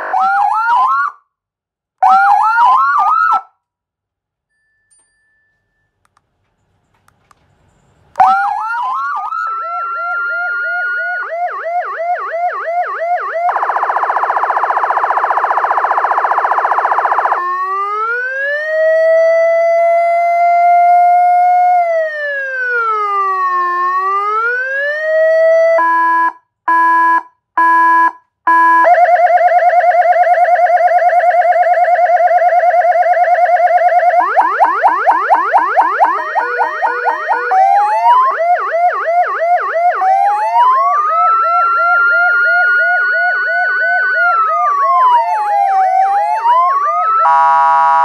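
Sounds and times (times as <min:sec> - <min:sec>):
siren changing tones: 0:00.0 - 0:01.2, 0:02.0 - 0:03.5, 0:08.2 - 0:48.0.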